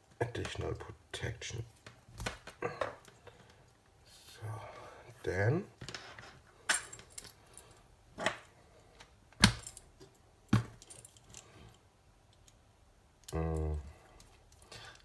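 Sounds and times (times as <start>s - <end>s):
metal parts clinking: 6.7s - 8.4s.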